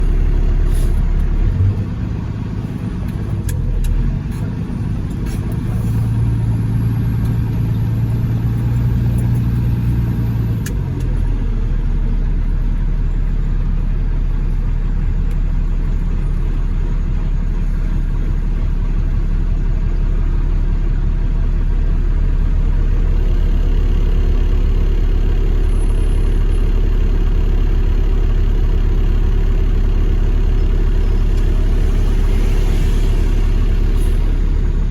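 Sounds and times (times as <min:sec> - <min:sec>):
vehicle engine rumbling: 0:00.0 - 0:34.9.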